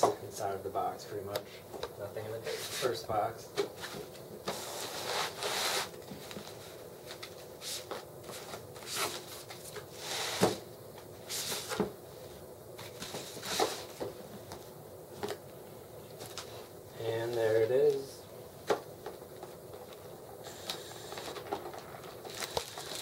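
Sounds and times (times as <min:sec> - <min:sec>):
cardboard packaging rustling: 0:19.8 - 0:23.0.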